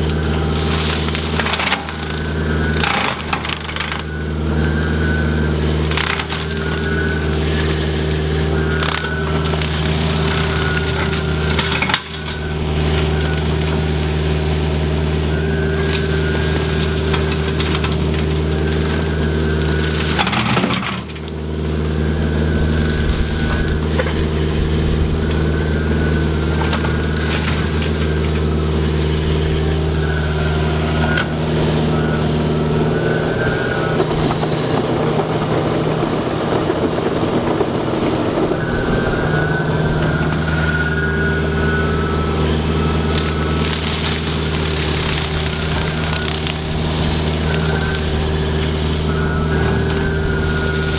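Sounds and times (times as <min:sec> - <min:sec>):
diesel engine drone: 0:00.0 - 0:50.9
rotary brush mower cutting: 0:00.0 - 0:50.9
wood and brush cracking: 0:00.0 - 0:50.9.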